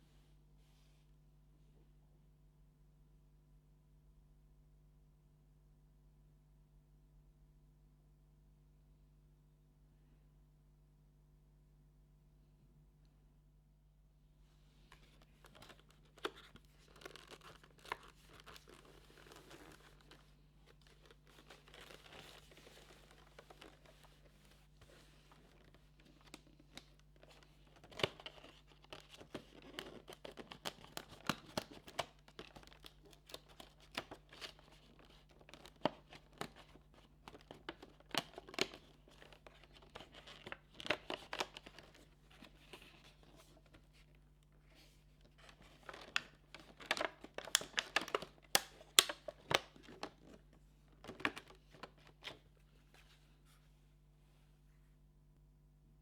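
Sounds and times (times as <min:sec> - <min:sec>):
packaging tearing and crinkling: 0:15.2 - 0:24.1, 0:25.4 - 0:43.5, 0:45.4 - 0:50.4.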